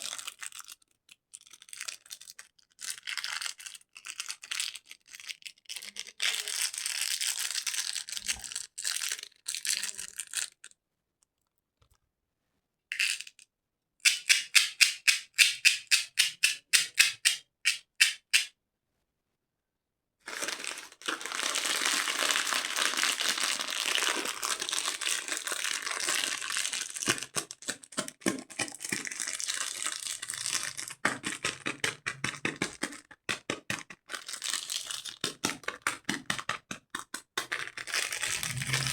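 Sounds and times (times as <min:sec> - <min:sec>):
candy wrapper crackling: 0:01.4 - 0:10.8, 0:20.3 - 0:27.8.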